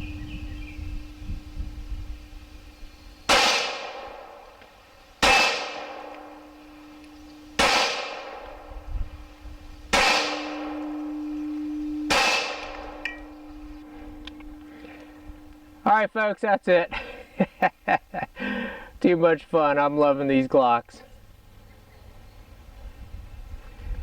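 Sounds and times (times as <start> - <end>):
pistol shots: 3.3 - 13.5
ringing metal clang: 5.2 - 15.8.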